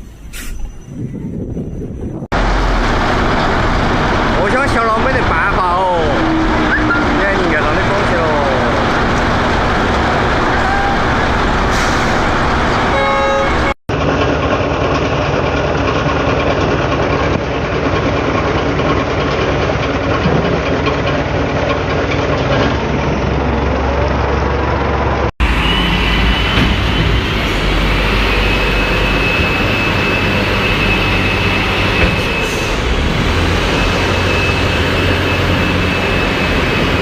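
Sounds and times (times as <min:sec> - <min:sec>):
heavy truck engines running: 0:00.0 - 0:37.0
short horn toot: 0:12.9 - 0:13.8.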